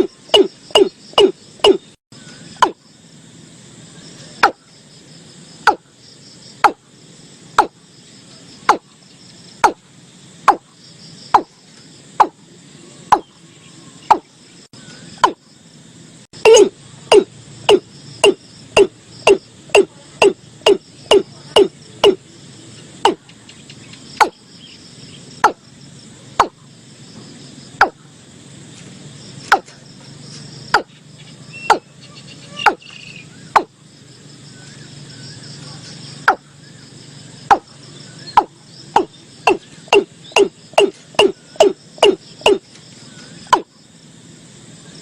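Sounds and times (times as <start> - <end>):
bird hollow knocking calls: 0.0 - 2.8, 5.7 - 5.9, 6.6 - 6.8, 7.6 - 7.8, 8.6 - 9.8, 11.3 - 11.6, 13.1 - 13.4, 14.0 - 14.4, 15.1 - 15.4, 16.4 - 22.2, 23.0 - 24.8, 25.4 - 25.6, 26.4 - 26.6, 29.4 - 29.8, 30.7 - 33.8, 36.2 - 36.5, 37.4 - 43.7.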